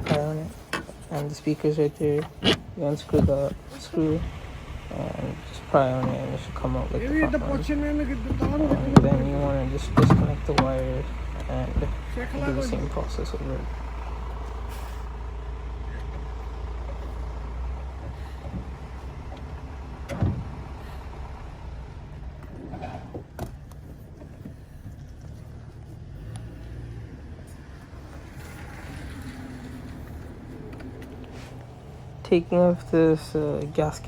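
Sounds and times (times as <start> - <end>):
low steady rumble: 0.0 - 34.0.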